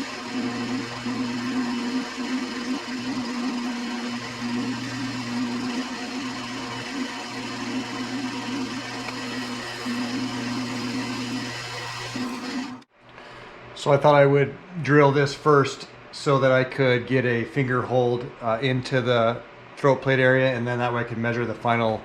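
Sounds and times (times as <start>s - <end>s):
drill press motor hum: 0.0s - 12.9s.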